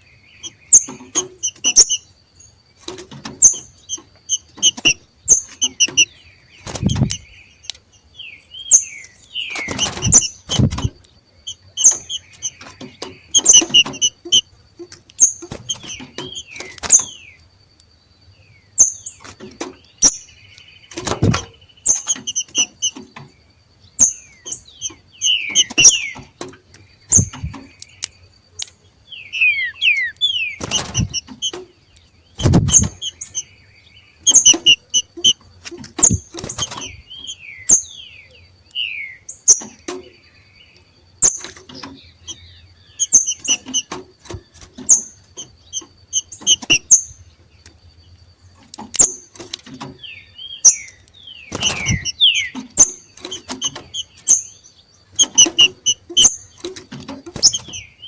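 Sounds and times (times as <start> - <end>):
birds chirping: 0.0 - 58.0
loud sharp thumps: 32.4 - 33.4.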